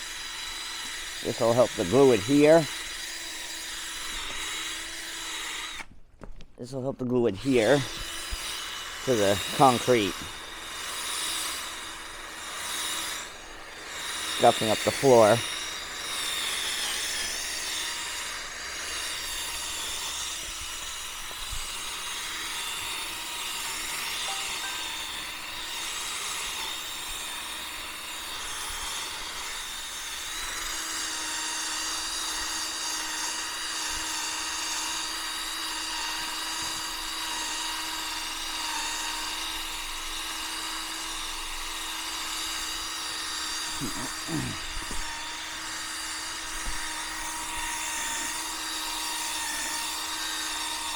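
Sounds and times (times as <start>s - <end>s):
drill wire brush scrubbing concrete: 0.0s - 5.9s, 7.2s - 50.9s.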